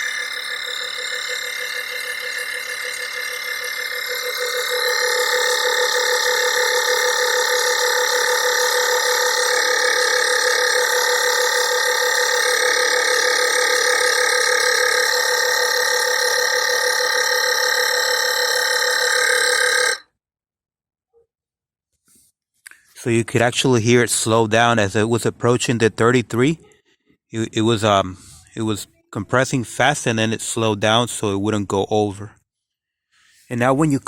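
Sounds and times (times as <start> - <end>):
air compressor running: 0.0 - 20.0.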